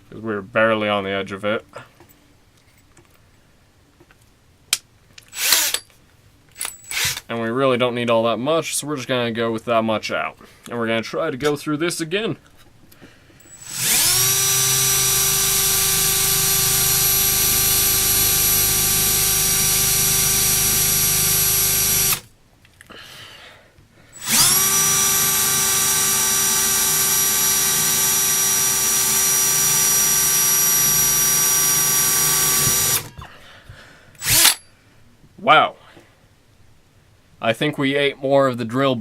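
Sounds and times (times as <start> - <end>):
electric drill whining into metal: 5.3 - 5.9, 6.6 - 7.3, 13.4 - 22.3, 24.2 - 33.3, 34.2 - 34.7.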